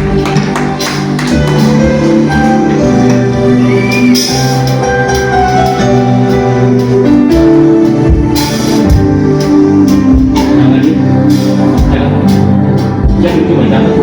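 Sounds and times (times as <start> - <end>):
drum hits: 0.0 - 2.8
sustained keyboard chords: 0.0 - 14.0.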